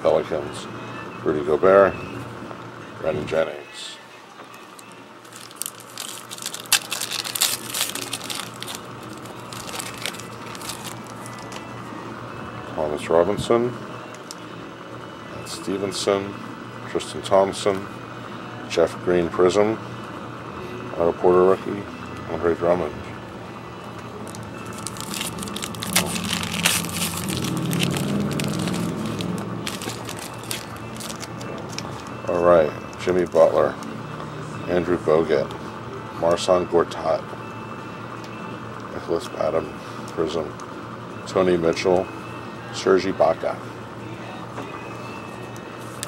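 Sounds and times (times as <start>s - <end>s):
card pack wrapper crinkling: 5.2s - 11.6s, 24.2s - 32.1s
wrapper tearing open: 5.2s - 11.6s, 24.2s - 31.9s.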